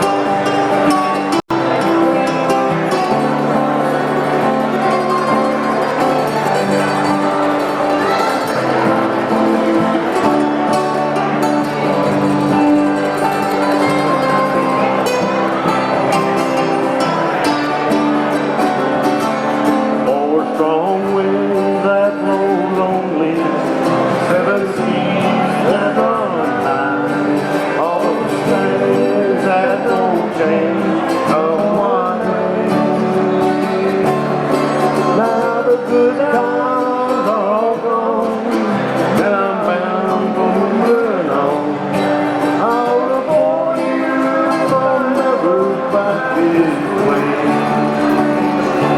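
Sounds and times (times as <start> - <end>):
acoustic guitar: 0.0 - 48.9
person singing: 0.0 - 48.9.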